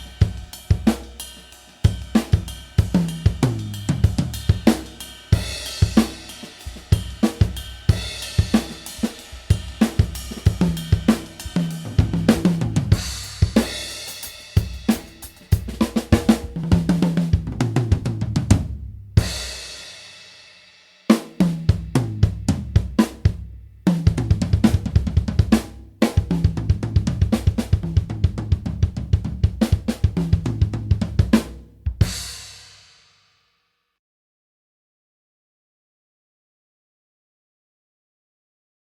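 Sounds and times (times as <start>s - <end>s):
drum kit grooves and fills: 0.0s - 33.4s.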